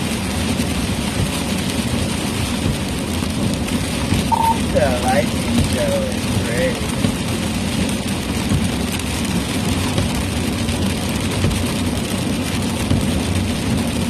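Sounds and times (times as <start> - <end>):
rain: 0.0 - 14.0
tyres hissing on wet road: 0.0 - 14.0.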